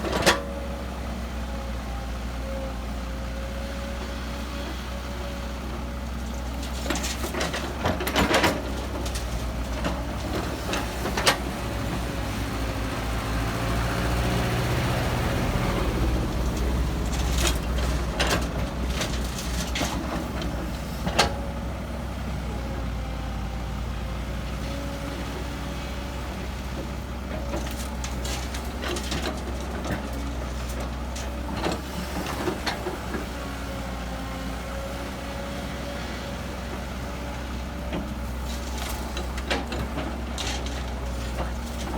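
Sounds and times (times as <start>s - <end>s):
diesel machinery running: 0.0s - 41.9s
metal clanks and knocks: 6.4s - 12.1s, 16.3s - 21.5s, 27.3s - 33.0s, 37.9s - 41.9s.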